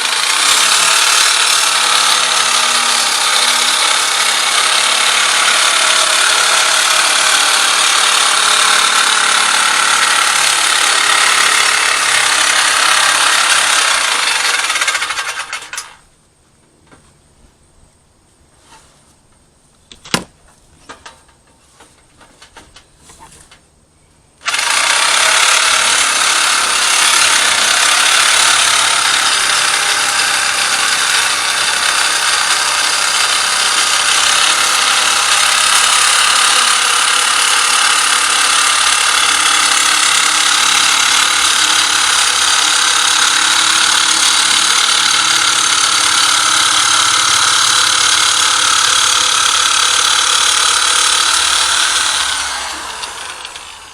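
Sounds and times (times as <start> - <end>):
power tool working sheet metal: 0.0 - 16.0, 24.4 - 53.9
metal clicks and knocks: 19.3 - 23.7.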